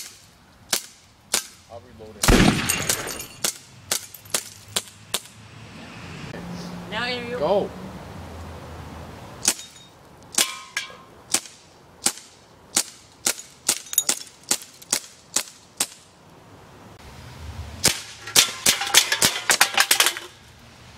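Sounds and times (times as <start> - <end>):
bb gun shots cracking: 2.2 - 5.3.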